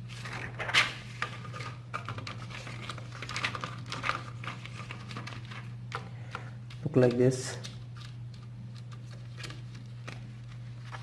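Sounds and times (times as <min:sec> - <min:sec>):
plastic sheet crinkling: 0:00.0 - 0:05.9.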